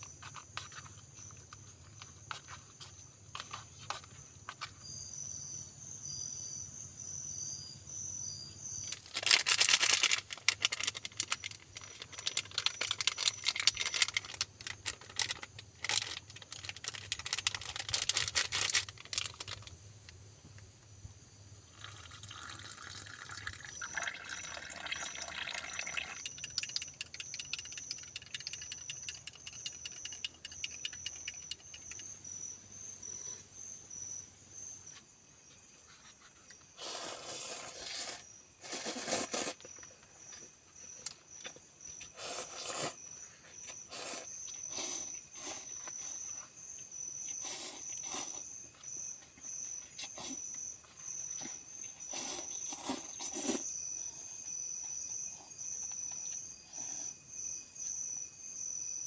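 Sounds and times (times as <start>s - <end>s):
insects chirping: 0.0s - 59.0s
crackling and rustling: 8.8s - 20.2s.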